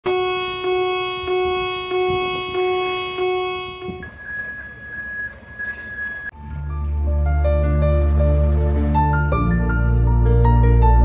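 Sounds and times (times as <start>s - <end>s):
low keyboard note repeating: 0.1s - 4.1s
higher note pulsing gently: 0.1s - 4.9s.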